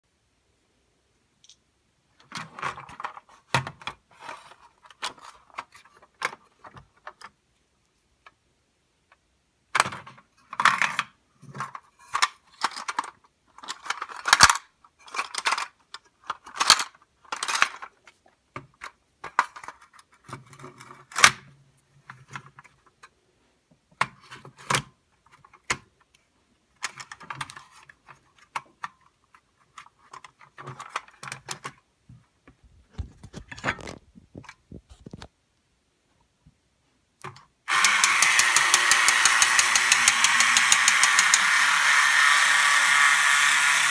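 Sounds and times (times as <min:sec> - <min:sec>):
toy car metallic clicking and rattling: 0:10.5 - 0:18.0, 0:37.7 - 0:43.9.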